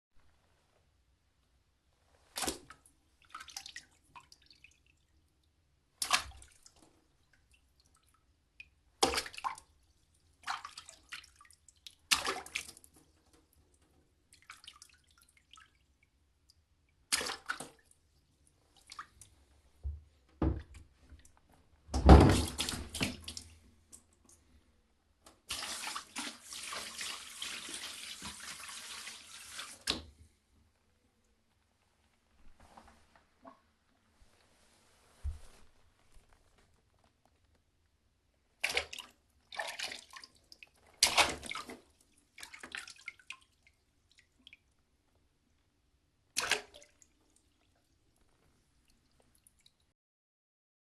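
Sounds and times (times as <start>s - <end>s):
water splashes: 10.4s - 12.8s, 17.1s - 17.9s, 22.1s - 23.6s, 25.5s - 30.1s, 38.6s - 40.4s, 41.0s - 43.5s, 46.4s - 47.6s.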